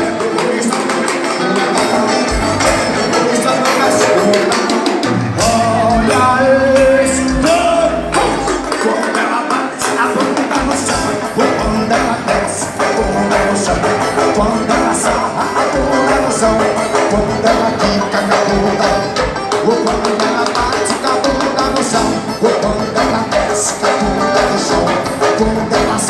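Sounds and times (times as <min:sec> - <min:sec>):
live band dance music: 0:00.0 - 0:26.0
pulsing bass beat: 0:02.3 - 0:03.2, 0:05.1 - 0:08.8.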